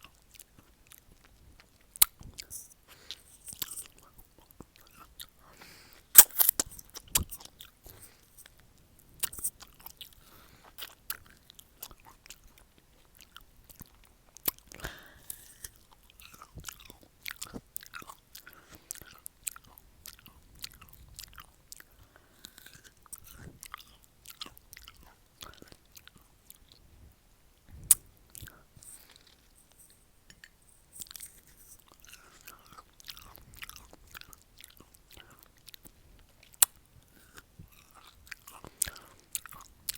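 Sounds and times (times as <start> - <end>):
wet crunchy chewing: 0.1 - 8.6, 27.9 - 39.9
biting into a pear: 6.2 - 8.5.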